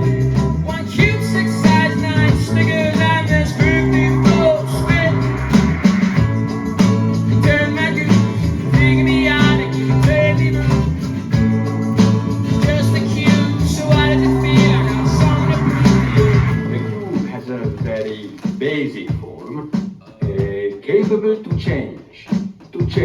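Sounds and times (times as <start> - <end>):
wavering high melody: 0.0 - 17.2
strummed chords: 0.0 - 17.5.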